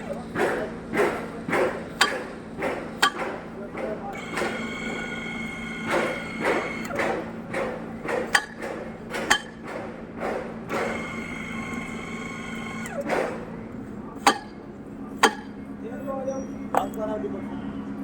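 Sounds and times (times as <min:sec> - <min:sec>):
pipe threading machine motor hum: 0:00.9 - 0:13.6.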